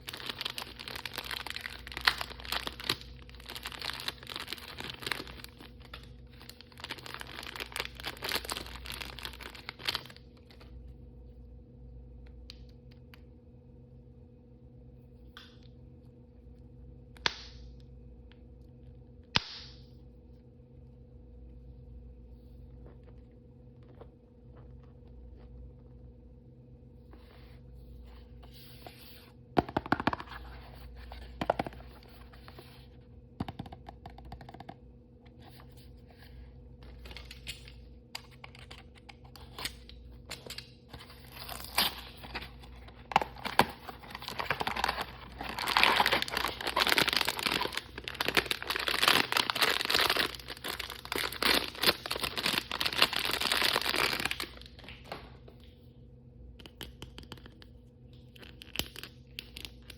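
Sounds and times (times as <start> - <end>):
plastic packaging tearing and crinkling: 0.0 - 10.6, 36.9 - 54.9, 58.4 - 59.9.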